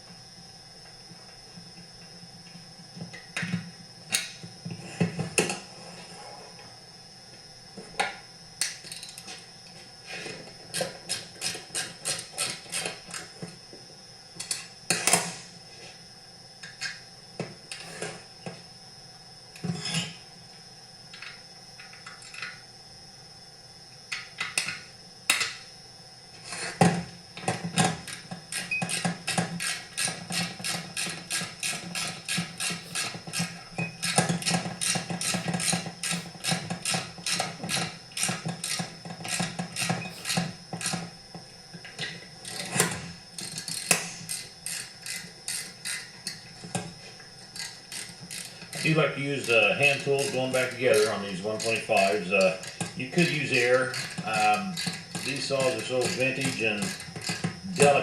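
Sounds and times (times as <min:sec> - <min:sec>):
hand ratchet clicking: 0:28.5 - 0:41.0, 0:42.5 - 0:46.4, 0:47.6 - 0:58.0.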